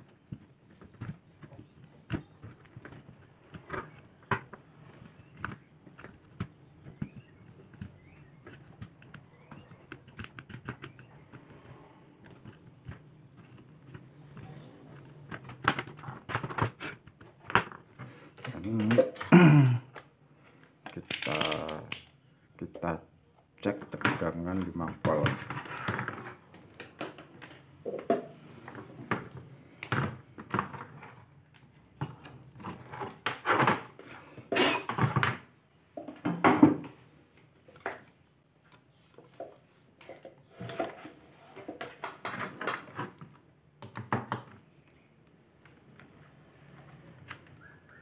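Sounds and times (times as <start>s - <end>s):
tools and probes clicking and tapping: 0.0s - 19.3s, 19.9s - 22.2s, 23.9s - 28.3s, 37.6s - 41.0s.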